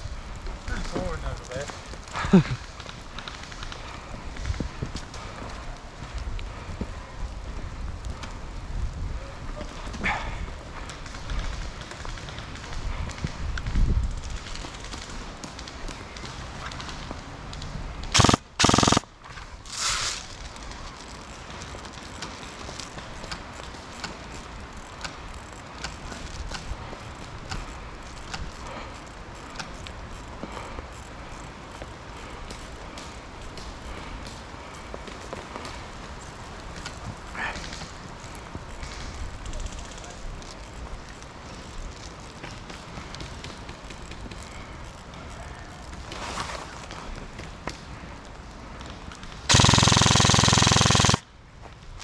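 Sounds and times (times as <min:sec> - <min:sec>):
wind rumbling on microphone: 0:00.0 - 0:18.6
short hiss of noise: 0:19.6 - 0:20.4.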